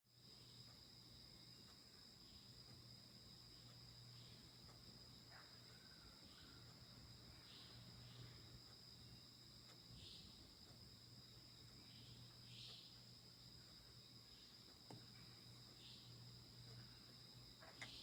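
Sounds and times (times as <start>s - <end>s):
low steady hum: 0.1s - 18.0s
high-pitched insect chorus: 0.2s - 18.0s.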